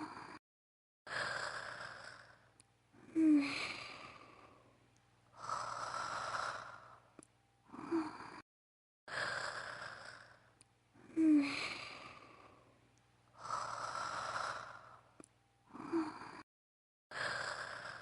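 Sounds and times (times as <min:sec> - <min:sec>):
woman's voice acting snoring: 0:00.0 - 0:00.4, 0:01.1 - 0:02.4, 0:03.0 - 0:04.5, 0:07.7 - 0:08.4, 0:09.1 - 0:10.4, 0:11.0 - 0:12.5, 0:13.4 - 0:15.0, 0:15.7 - 0:16.5, 0:17.1 - 0:18.0.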